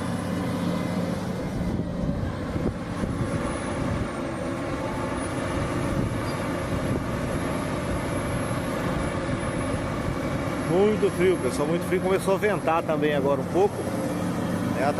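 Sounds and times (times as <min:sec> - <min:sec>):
bulldozer engine running: 0:00.0 - 0:14.9
excavator diesel engine running: 0:00.0 - 0:14.9
wind buffeting microphone: 0:01.5 - 0:04.2, 0:05.6 - 0:07.4.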